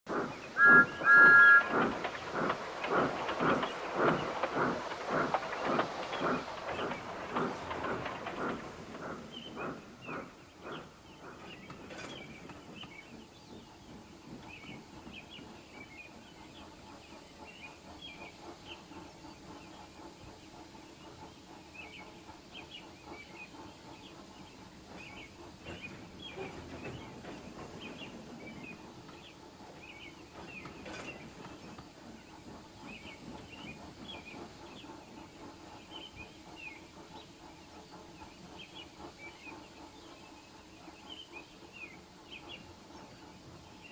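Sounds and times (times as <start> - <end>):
birds chirping: 0.1 - 31.7.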